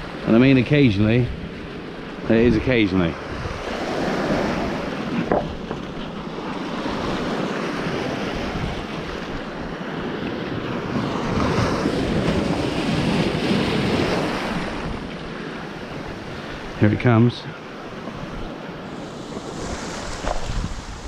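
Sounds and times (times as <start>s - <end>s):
wind buffeting microphone: 0.0s - 17.0s, 17.9s - 21.0s
surf washing onto beach: 0.0s - 21.0s.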